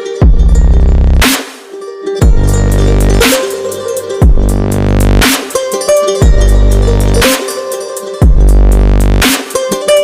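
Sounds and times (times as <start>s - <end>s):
electronic dance music: 2.2s - 10.0s.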